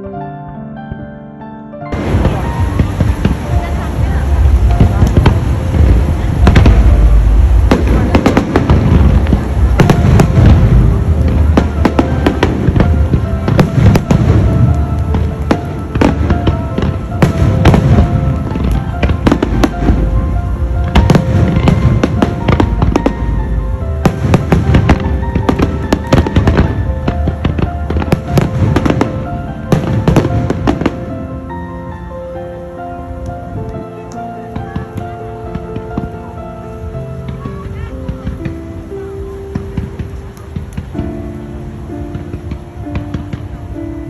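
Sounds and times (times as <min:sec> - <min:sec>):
music: 0:00.0 - 0:44.0
fireworks bangs and crackles: 0:01.9 - 0:32.2, 0:33.2 - 0:44.0
low rumble of bursting shells: 0:02.0 - 0:31.0.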